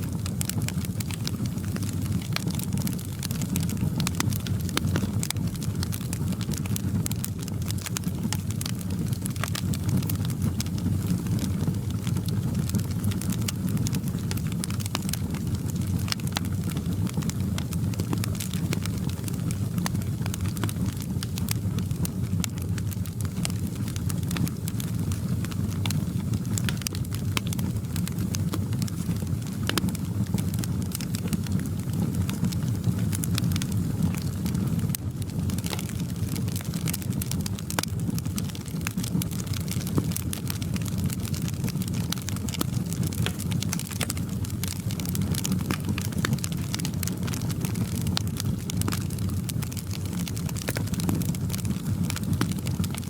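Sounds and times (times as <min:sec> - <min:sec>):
wood fire crackling: 0:00.0 - 0:53.0.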